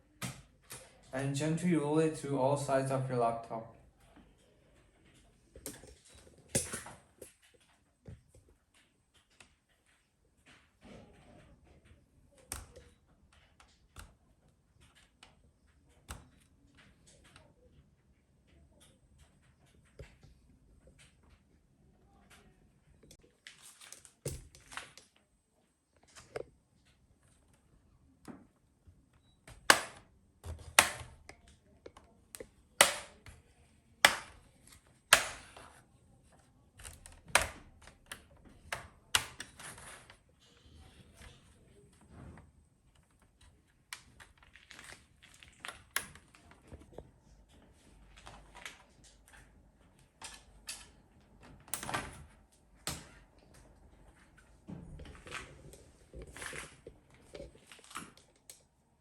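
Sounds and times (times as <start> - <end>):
plastic clips snapping loose: 29.6 - 31.4, 32.8 - 33.3, 34.0 - 34.4, 35.1 - 35.6
plastic laptop cover clicking: 29.6 - 33.4, 34.0 - 34.4, 35.1 - 35.8.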